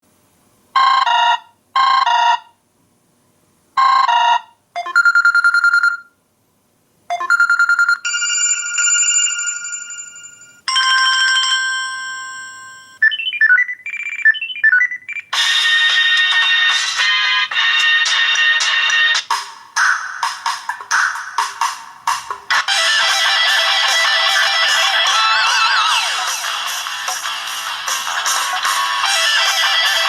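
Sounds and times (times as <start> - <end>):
electronic phone ringtones: 3.8 - 6.1, 7.1 - 19.2, 22.7 - 26.7, 28.6 - 30.0.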